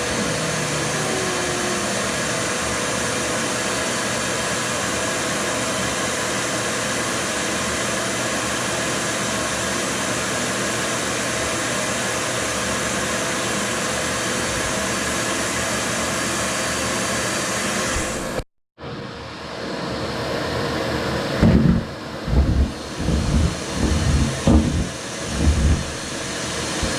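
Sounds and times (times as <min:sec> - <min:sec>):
faint steady whine: 0:21.4 - 0:26.9.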